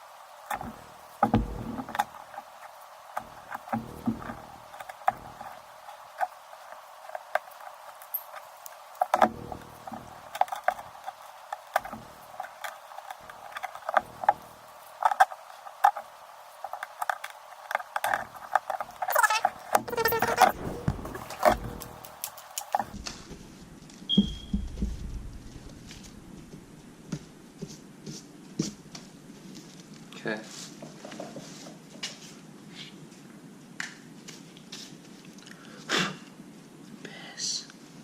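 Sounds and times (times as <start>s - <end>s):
soft knocks: 22.8s - 27.8s.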